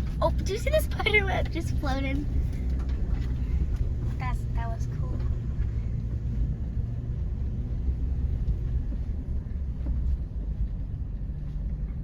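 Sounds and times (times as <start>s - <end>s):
engine and tyres rumbling: 0.0s - 12.0s.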